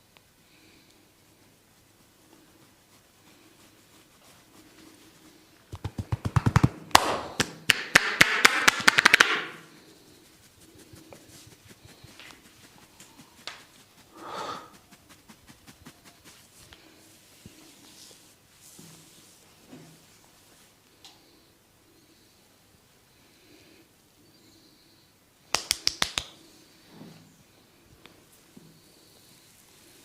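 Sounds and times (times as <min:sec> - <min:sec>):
rubbing and scratching in hair: 0:00.9 - 0:20.8, 0:25.5 - 0:26.5
hands tapping and slapping head: 0:05.7 - 0:09.6, 0:25.5 - 0:26.4.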